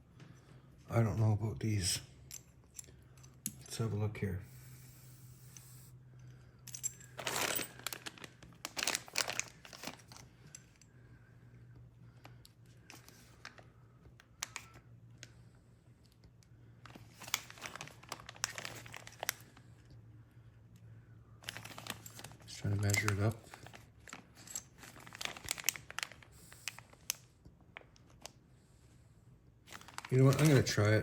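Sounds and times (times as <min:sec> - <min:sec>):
plastic packaging crinkling: 0:07.2 - 0:10.2, 0:16.9 - 0:19.6, 0:21.4 - 0:27.2, 0:29.7 - 0:30.9.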